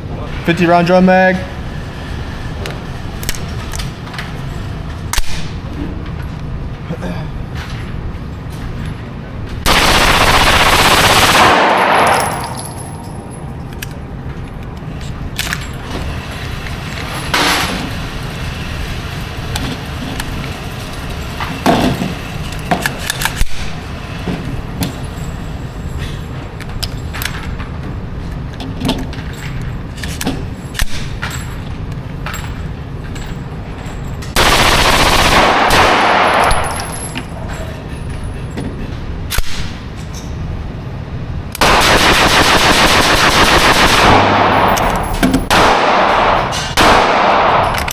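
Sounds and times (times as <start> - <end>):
rapid gunfire: 9.6 - 12.4, 34.4 - 36.8, 41.6 - 44.8.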